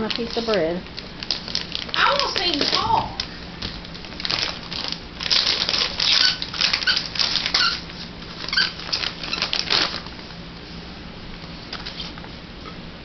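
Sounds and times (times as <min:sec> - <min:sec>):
dog rustling gift wrapping: 0:00.0 - 0:10.3.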